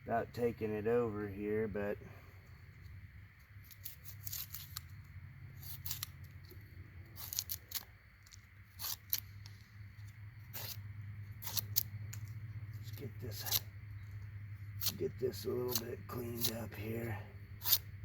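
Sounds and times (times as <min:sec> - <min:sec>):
rotten wood scraping and crackling: 0:03.6 - 0:05.0, 0:05.6 - 0:09.6, 0:11.4 - 0:14.2, 0:14.8 - 0:17.2.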